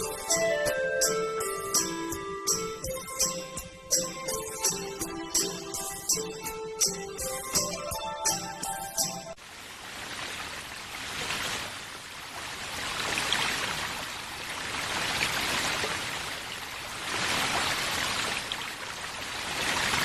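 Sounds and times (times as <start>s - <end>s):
rushing water: 9.4s - 20.0s.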